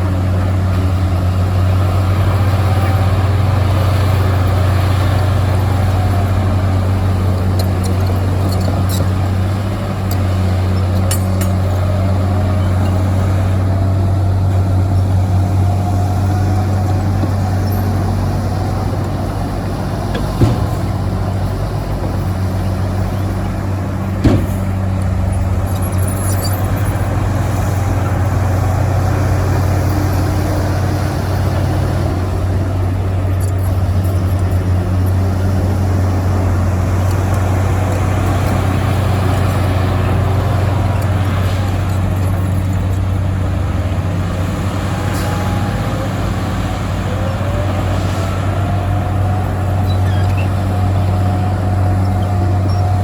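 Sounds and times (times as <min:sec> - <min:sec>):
diesel earthmoving machinery running: 0:00.0 - 0:53.0
sharp knocks: 0:20.1 - 0:22.6, 0:24.2 - 0:24.9.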